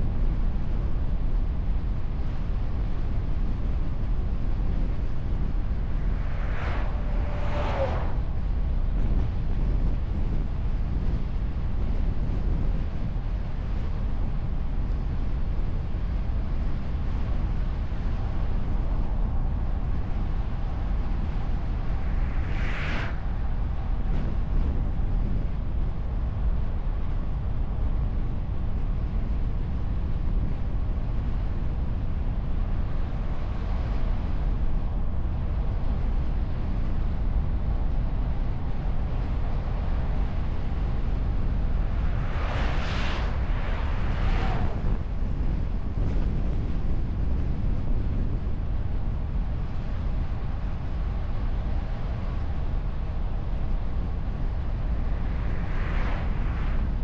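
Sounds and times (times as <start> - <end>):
car road and wind rumble: 0.0 - 57.0
passing traffic whooshes: 4.3 - 10.1, 17.9 - 25.5, 33.4 - 48.8, 50.5 - 57.0.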